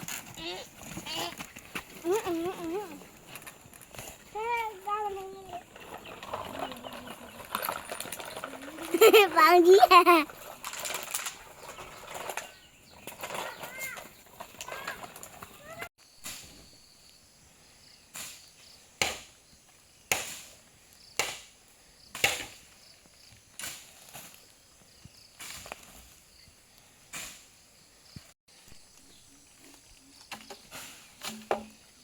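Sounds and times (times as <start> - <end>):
chopping strikes on wood: 19.0 - 19.4, 20.1 - 20.5, 21.2 - 21.6, 22.2 - 22.7, 31.2 - 31.8.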